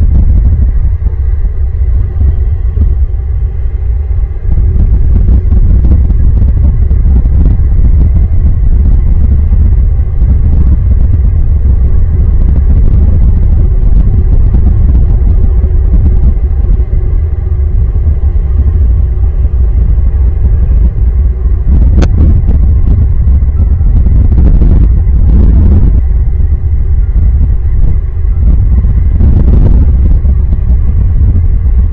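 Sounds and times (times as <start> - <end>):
wind buffeting microphone: 0.0 - 31.9.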